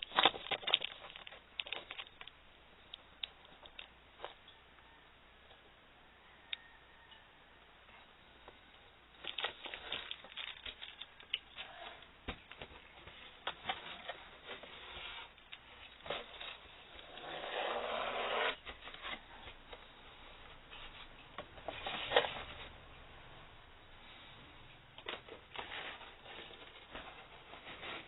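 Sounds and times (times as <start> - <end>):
plastic rubbing scrape: 13.0 - 15.4, 16.0 - 19.3, 25.3 - 28.0.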